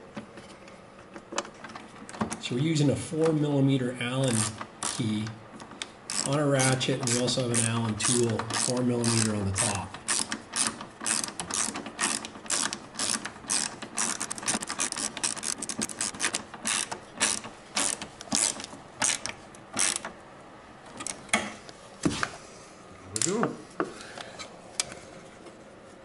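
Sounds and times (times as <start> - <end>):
socket ratchet clicking: 4.2 - 5.2, 6.1 - 20.1.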